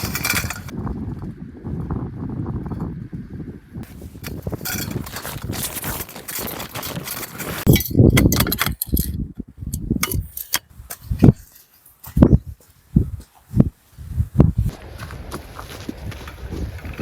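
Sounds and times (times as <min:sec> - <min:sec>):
rustling and clinking of gear: 0:00.0 - 0:00.8, 0:03.8 - 0:13.5.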